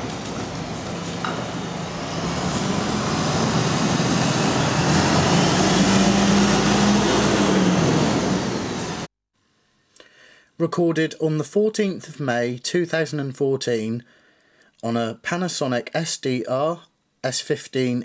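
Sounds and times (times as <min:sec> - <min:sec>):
large vehicle low hum: 0:00.0 - 0:09.1
loud rushing noise: 0:00.0 - 0:09.1.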